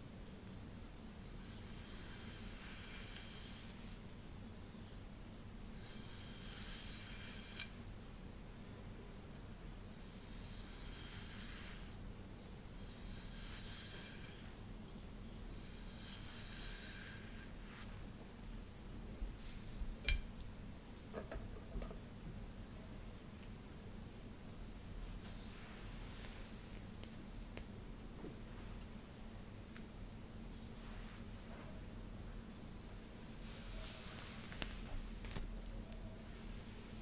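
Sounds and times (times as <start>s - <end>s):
brush strokes through hair: 33.1s - 35.4s.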